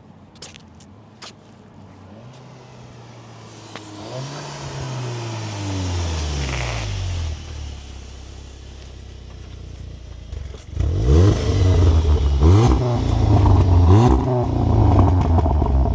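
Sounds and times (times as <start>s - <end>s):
car driving past: 1.8s - 14.6s
tyre and wind hiss: 2.6s - 13.4s.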